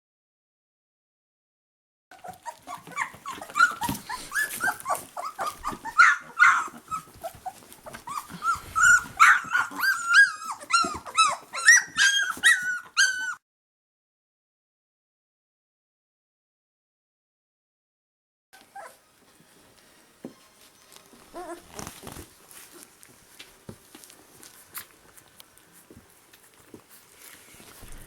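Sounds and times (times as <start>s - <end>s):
puppies yelping and whining: 2.1s - 13.4s, 18.6s - 19.0s, 21.0s - 23.2s.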